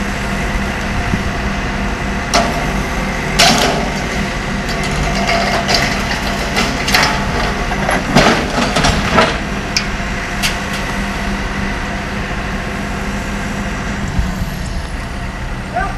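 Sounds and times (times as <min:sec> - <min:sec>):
heavy diesel engine running: 0:00.0 - 0:15.9
knocks and clanks: 0:02.3 - 0:10.9.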